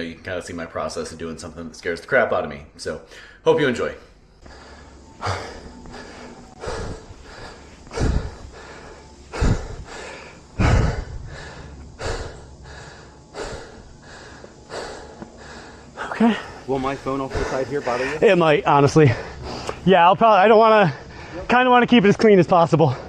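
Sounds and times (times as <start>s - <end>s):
person breathing hard: 4.4s - 18.2s, 19.0s - 19.8s.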